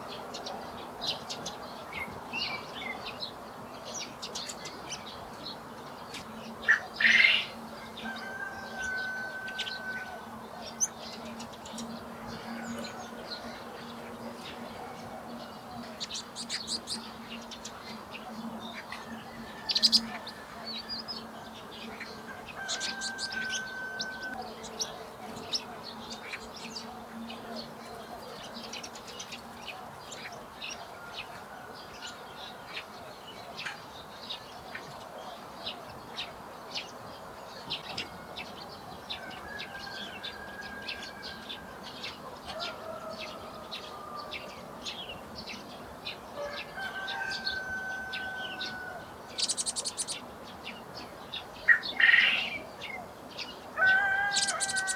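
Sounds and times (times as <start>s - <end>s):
small birds chirping: 0.0s - 54.9s
bird trill: 21.9s - 26.8s, 47.0s - 50.2s, 53.8s - 54.9s.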